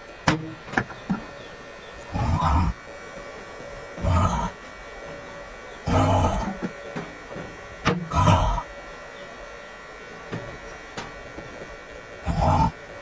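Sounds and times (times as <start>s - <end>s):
person snoring with rattle: 2.1s - 2.8s, 4.0s - 4.6s, 5.9s - 6.6s, 8.0s - 8.7s, 12.2s - 12.8s.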